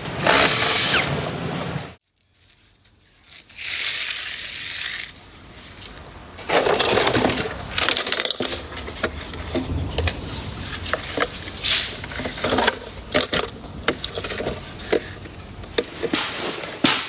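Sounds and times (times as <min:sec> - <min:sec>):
hard objects knocking and scraping: 0:06.4 - 0:17.0.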